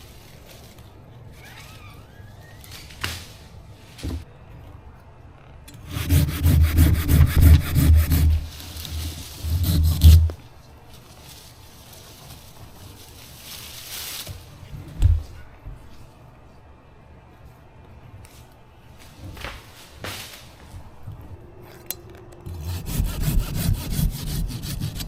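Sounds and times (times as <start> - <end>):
hand saw cutting wood: 5.7 - 10.4, 22.5 - 25.0.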